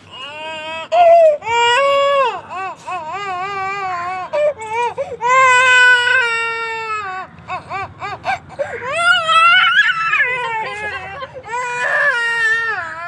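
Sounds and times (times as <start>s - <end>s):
small child crying: 0.0s - 13.0s.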